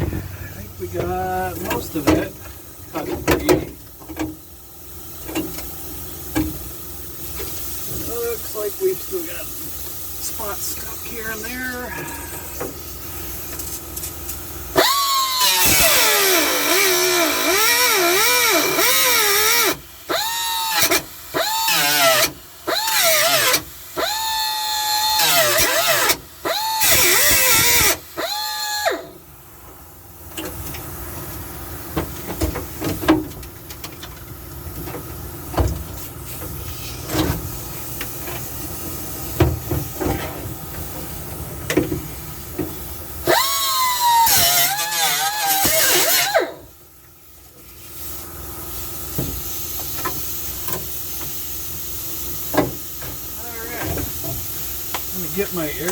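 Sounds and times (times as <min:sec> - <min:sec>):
power tool cutting sheet metal: 0:14.8 - 0:29.1, 0:43.2 - 0:46.7.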